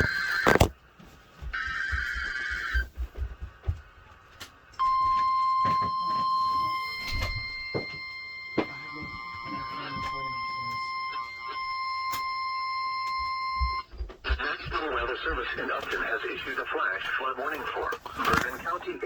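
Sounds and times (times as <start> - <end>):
warning alarm tone: 4.8 - 14.0.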